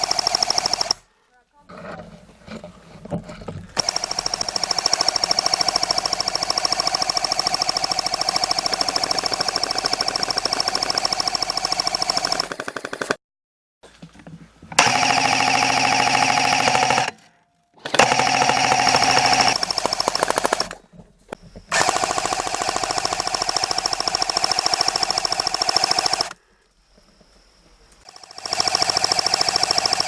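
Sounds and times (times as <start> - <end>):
airsoft gun full-auto bursts: 0.0 - 1.1, 3.8 - 13.2, 14.8 - 17.2, 17.8 - 20.8, 21.7 - 26.4, 28.0 - 30.0.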